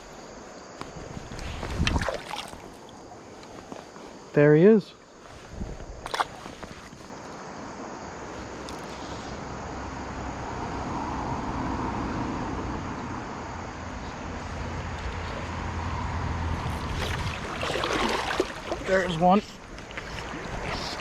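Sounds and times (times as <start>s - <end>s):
flooded stream rushing: 16.4s - 21.0s.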